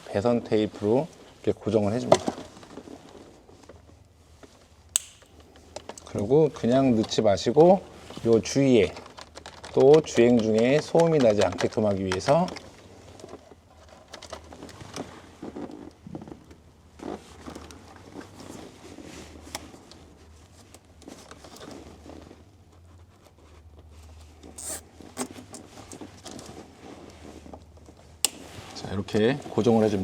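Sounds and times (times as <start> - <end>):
cable and plastic rustling: 0.0 - 30.0
sharp clicks: 5.0 - 5.3.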